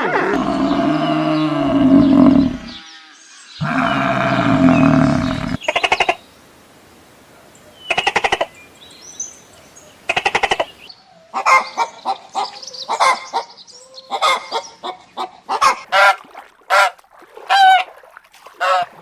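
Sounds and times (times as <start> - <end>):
birds calling: 0.0 - 6.4, 7.4 - 16.0.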